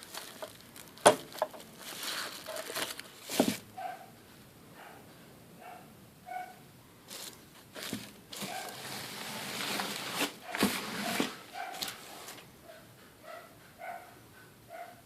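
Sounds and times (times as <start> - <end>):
packaging crackling and rustling: 0.0 - 3.6, 7.1 - 12.4.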